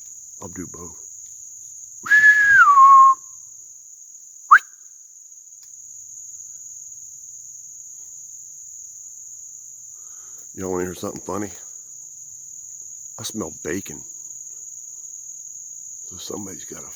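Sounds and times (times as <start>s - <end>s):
crickets trilling: 0.0s - 16.9s
person whistling loudly: 2.0s - 3.2s.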